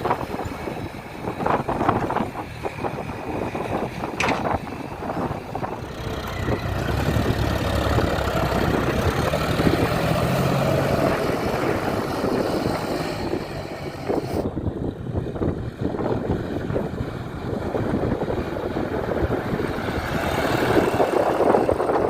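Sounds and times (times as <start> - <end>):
heavy diesel engine running: 0.0 - 22.0
clattering knocks: 4.2 - 4.6.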